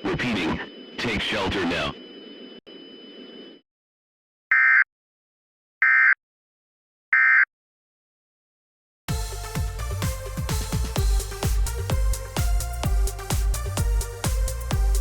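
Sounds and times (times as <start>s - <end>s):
electronic dance music: 9.1s - 15.0s.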